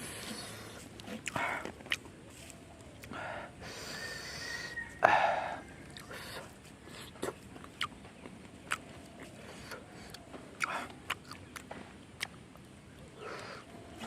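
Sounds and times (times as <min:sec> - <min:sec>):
chewing: 0:00.0 - 0:03.2, 0:05.0 - 0:14.0
small eating clicks and smacks: 0:00.2 - 0:03.2, 0:05.8 - 0:14.0.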